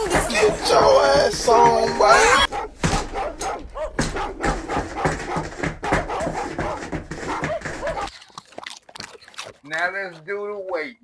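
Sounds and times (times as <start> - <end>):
dogs barking and yelping: 0.0 - 8.2.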